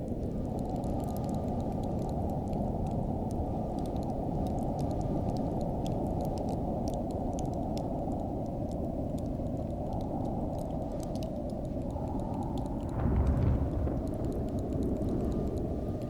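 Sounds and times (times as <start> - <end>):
faint crackling ticks: 0.0 - 16.0
wind blowing: 10.0 - 16.0.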